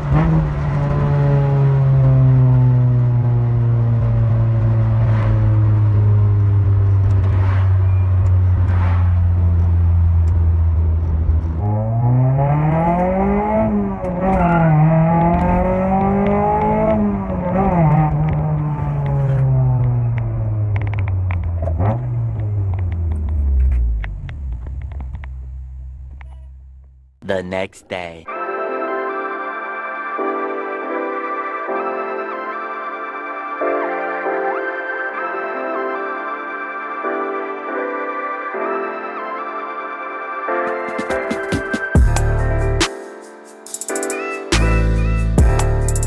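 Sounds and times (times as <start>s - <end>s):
car engine revving: 0.0s - 27.0s.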